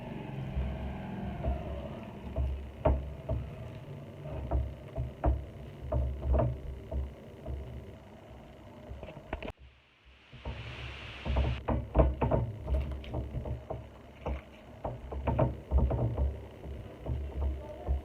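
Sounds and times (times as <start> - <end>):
low thuds: 0.0 - 8.0
faint steady hum: 0.0 - 18.0
knocks and taps: 4.4 - 7.7, 11.2 - 18.0.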